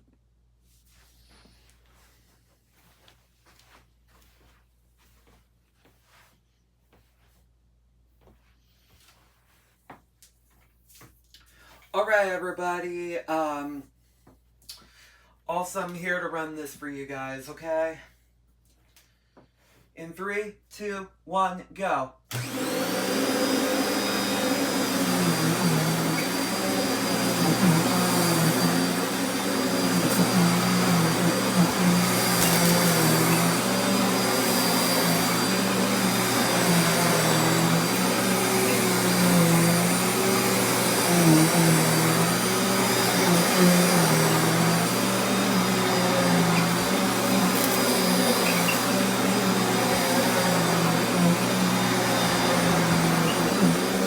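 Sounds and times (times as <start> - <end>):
vacuum cleaner running: 22.3 - 54.0.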